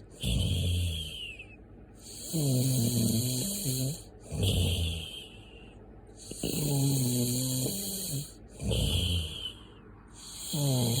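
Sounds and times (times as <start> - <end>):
rattling snore breath: 0.0 - 1.2, 2.0 - 5.3, 6.2 - 9.6, 10.2 - 11.0
humming snore: 0.0 - 5.4, 6.2 - 11.0.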